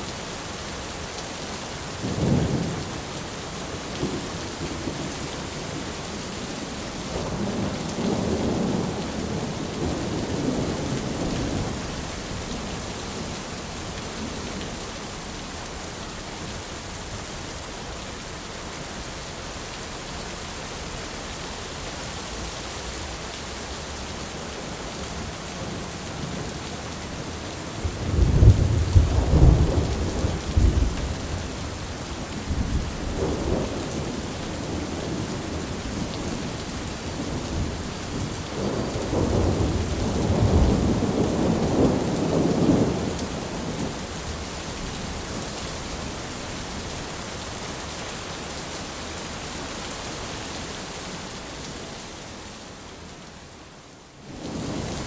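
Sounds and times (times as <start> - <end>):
heavy rain hissing: 0.0 - 53.2
thunder rumbling: 25.3 - 45.2.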